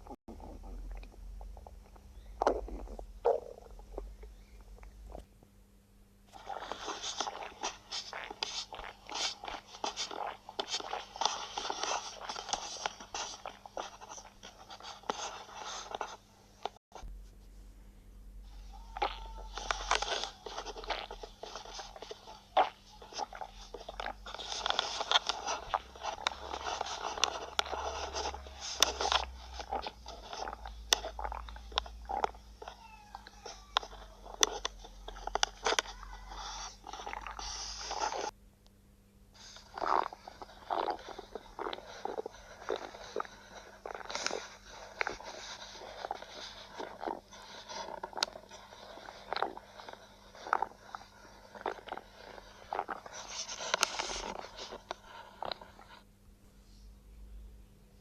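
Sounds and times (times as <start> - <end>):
cartoon stomach growling: 0.0 - 5.3, 18.6 - 38.3, 39.6 - 54.8.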